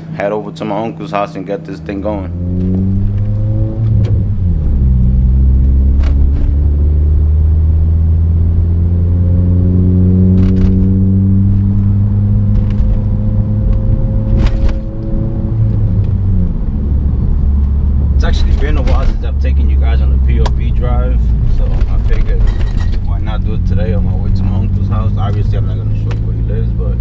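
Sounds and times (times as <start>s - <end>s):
car engine and exhaust driving: 0.0s - 27.0s.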